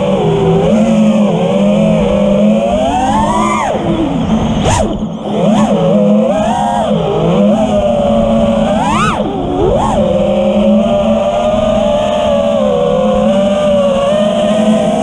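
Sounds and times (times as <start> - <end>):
quadcopter motors whining: 0.0 - 15.0
steady low hum: 0.0 - 15.0.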